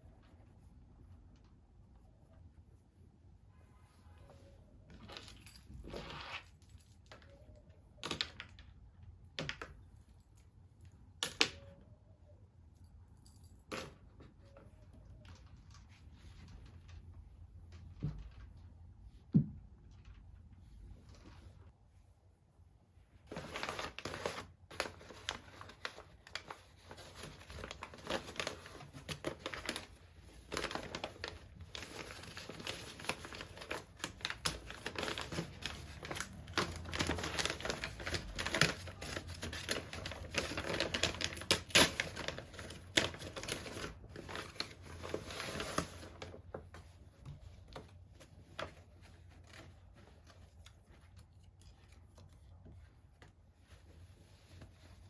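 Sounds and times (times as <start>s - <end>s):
packaging crinkling and rustling: 23.2s - 55.0s.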